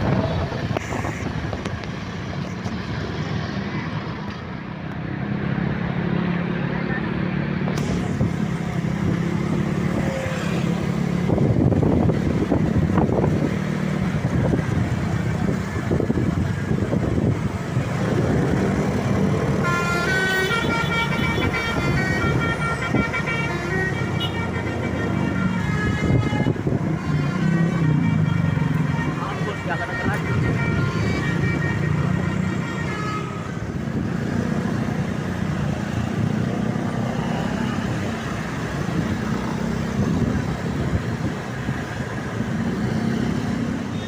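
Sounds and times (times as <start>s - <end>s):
bus engine running: 0.0s - 44.0s
road noise: 0.0s - 44.0s.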